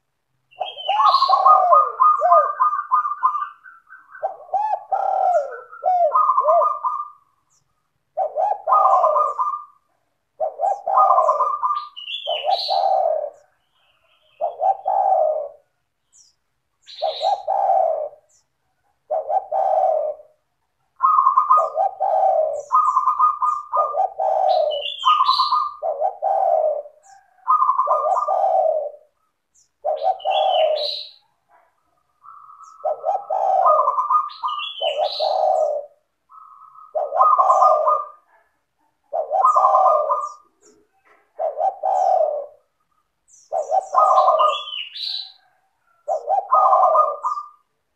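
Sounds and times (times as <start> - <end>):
dove cooing: 0.0 - 47.9.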